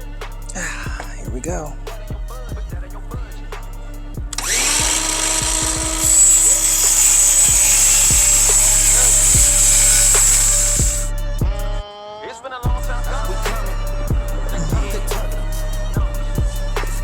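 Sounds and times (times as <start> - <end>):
hip-hop music: 0.0 - 17.0
electric power saw cutting: 4.4 - 11.1.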